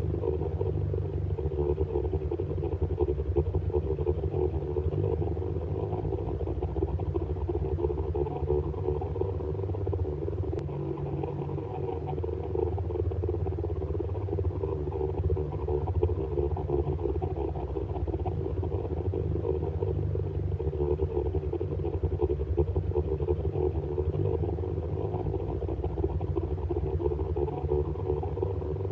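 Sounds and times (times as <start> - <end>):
synthesized engine hum: 0.0 - 28.9.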